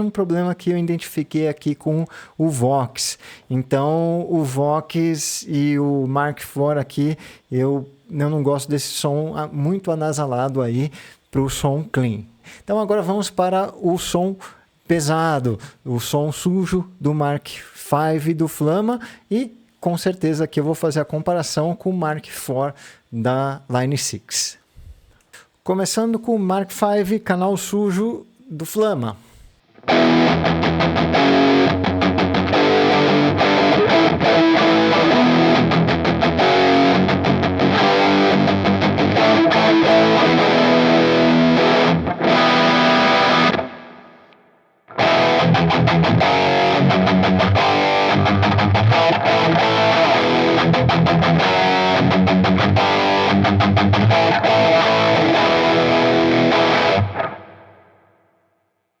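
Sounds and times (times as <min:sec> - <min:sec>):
distorted electric guitar riff: 0:29.7 - 0:58.0.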